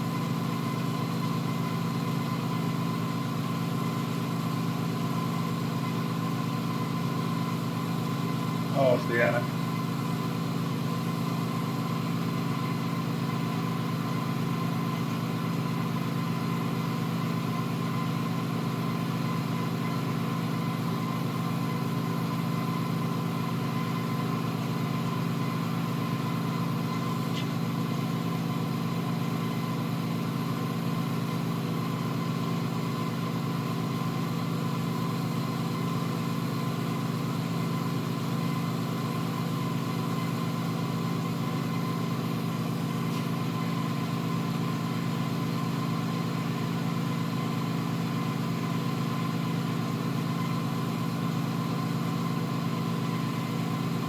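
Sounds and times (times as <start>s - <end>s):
steady machine hum: 8.7s - 9.6s.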